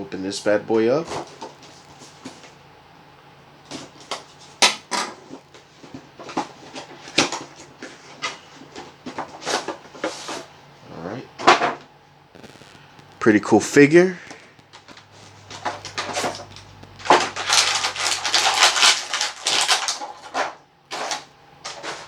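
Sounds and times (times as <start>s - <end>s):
packaging crinkling and snapping: 14.2s - 22.0s.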